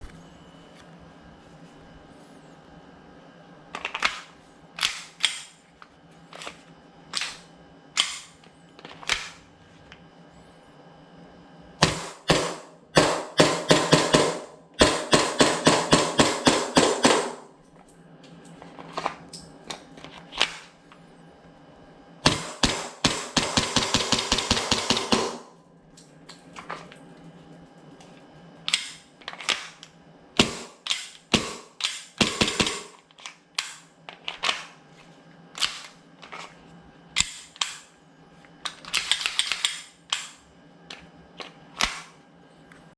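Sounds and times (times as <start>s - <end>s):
airsoft pistol shots: 11.8s - 17.4s, 22.3s - 25.5s, 30.4s - 33.0s.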